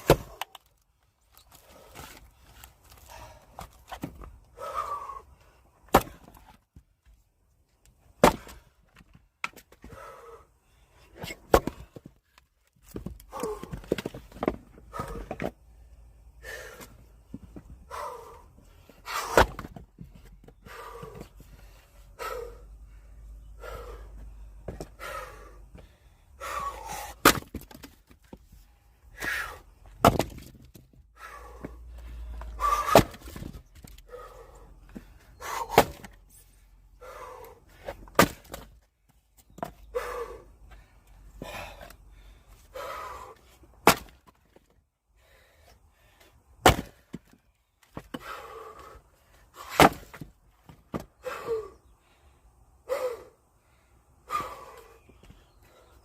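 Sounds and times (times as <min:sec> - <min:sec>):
axe splitting logs: 0:00.0 - 0:00.7, 0:05.8 - 0:06.6, 0:08.2 - 0:10.0, 0:11.2 - 0:12.2, 0:19.0 - 0:20.2, 0:26.4 - 0:28.2, 0:29.2 - 0:31.8, 0:32.4 - 0:36.2, 0:37.2 - 0:38.8, 0:42.9 - 0:44.7, 0:46.6 - 0:48.9, 0:49.6 - 0:51.1
person breathing hard: 0:01.5 - 0:03.8, 0:04.4 - 0:05.8, 0:09.8 - 0:11.2, 0:14.8 - 0:27.3, 0:28.6 - 0:29.9, 0:31.1 - 0:33.3, 0:33.9 - 0:38.1, 0:39.8 - 0:43.7, 0:45.1 - 0:47.1, 0:48.1 - 0:49.9, 0:51.2 - 0:56.0.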